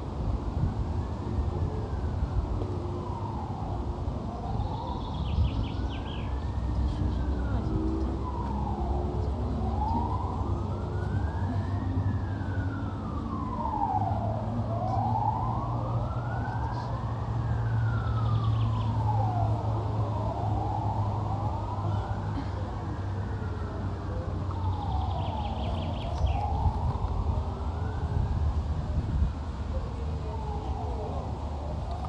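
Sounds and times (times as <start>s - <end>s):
emergency vehicle siren wailing: 0.0s - 32.0s
steady low rumble: 17.7s - 32.0s.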